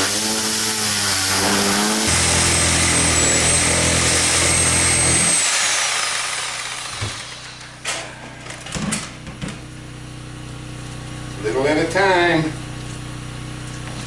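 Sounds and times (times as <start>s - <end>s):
power tool cutting into wall: 0.0s - 7.7s.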